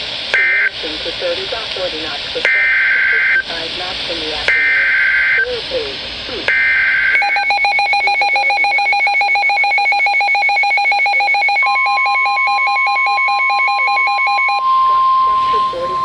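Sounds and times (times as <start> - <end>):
steady alarm tone: 2.4 - 3.5, 4.5 - 5.5, 6.5 - 16.0
screechy data burst: 2.4 - 5.6, 6.5 - 16.0
rapid pulsing alert beeps: 6.5 - 16.0.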